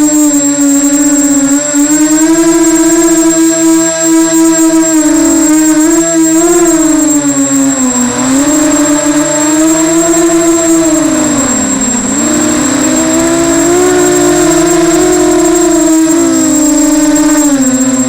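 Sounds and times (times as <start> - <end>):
drone motors whining: 0.0 - 18.0
thin high-pitched tone: 8.5 - 18.0.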